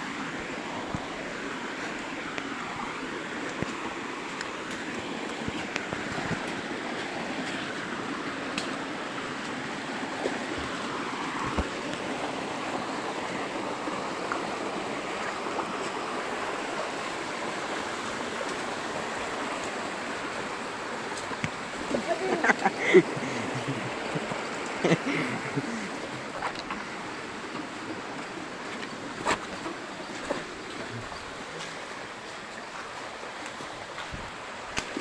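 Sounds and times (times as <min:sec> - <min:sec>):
rushing water of waterfall: 0:00.0 - 0:35.0
voices: 0:21.8 - 0:26.8.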